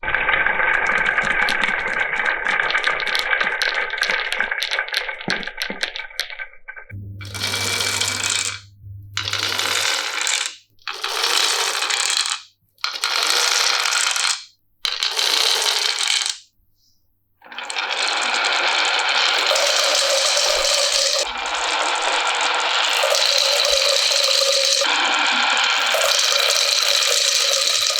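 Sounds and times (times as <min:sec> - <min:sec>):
marbles rolling along tracks: 0:07.2 - 0:08.6, 0:09.2 - 0:16.5, 0:17.5 - 0:27.9.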